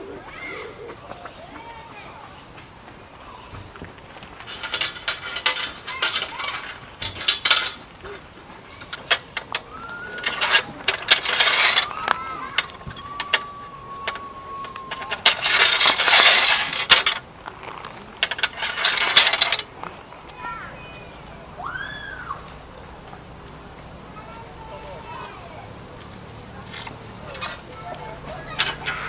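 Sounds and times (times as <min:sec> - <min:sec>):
gear rustling: 0:00.0 - 0:29.0
metal clinks: 0:04.4 - 0:14.2, 0:26.0 - 0:29.0.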